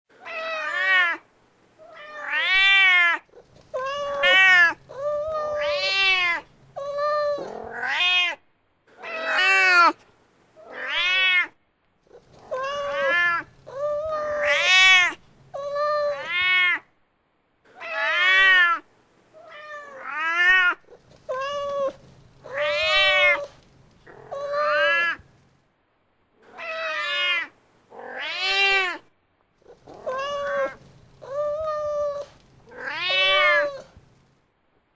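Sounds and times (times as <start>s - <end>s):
cat meowing: 0.2s - 1.2s, 1.8s - 8.4s, 9.0s - 10.0s, 10.6s - 16.9s, 17.8s - 25.4s, 26.4s - 29.1s, 29.7s - 34.2s.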